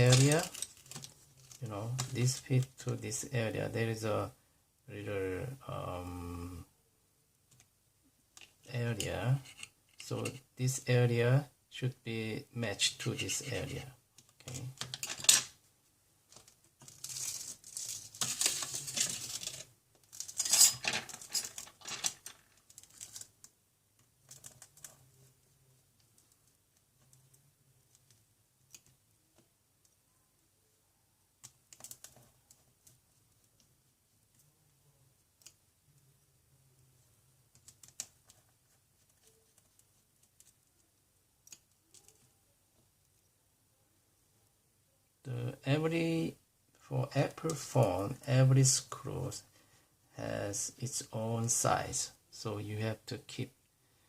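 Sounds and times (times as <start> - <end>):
rustling and scraping: 0.0 - 2.6, 14.4 - 23.5.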